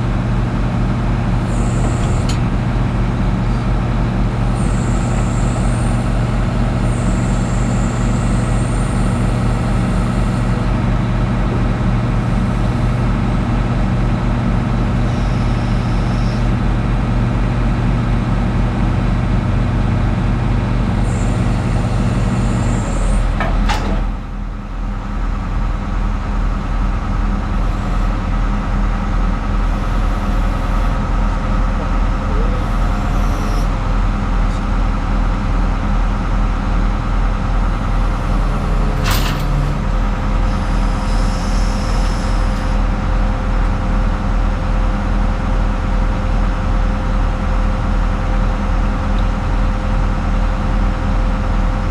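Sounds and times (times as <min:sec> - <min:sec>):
excavator diesel engine: 0:00.0 - 0:51.9
hydraulic whines: 0:00.6 - 0:17.3, 0:20.7 - 0:35.5, 0:36.9 - 0:44.3.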